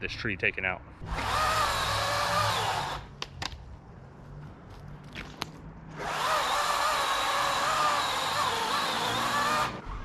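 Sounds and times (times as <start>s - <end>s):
chainsaw running: 6.0s - 9.8s.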